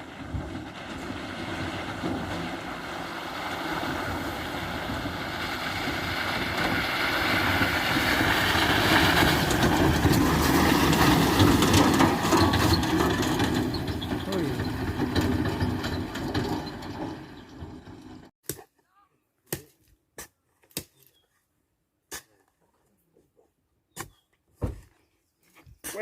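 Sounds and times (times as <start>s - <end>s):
vehicle running: 0.0s - 18.3s.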